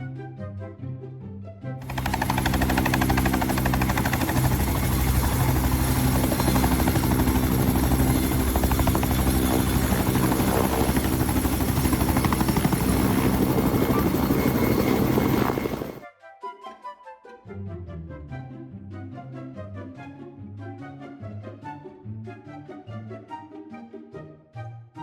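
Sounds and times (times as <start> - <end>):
engine-driven machine chopping: 1.8 - 13.7.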